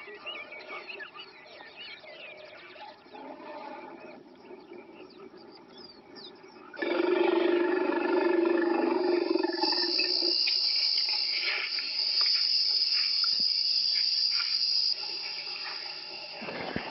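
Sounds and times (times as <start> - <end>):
high shrill chirring: 9.0 - 16.5.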